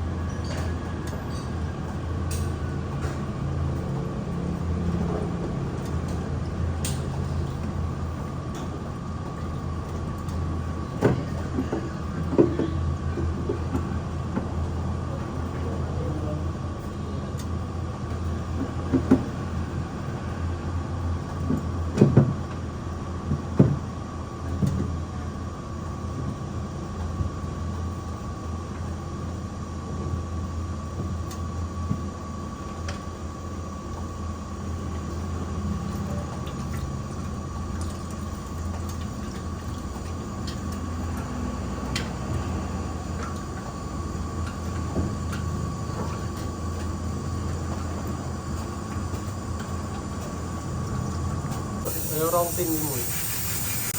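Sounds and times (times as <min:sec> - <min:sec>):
low mechanical hum: 0:00.0 - 0:53.9
faint steady whine: 0:27.8 - 0:53.9.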